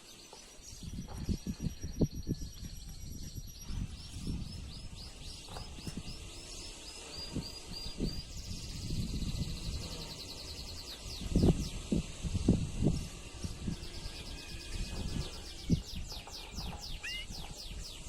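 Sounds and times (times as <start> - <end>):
canary singing: 13.7 - 18.0.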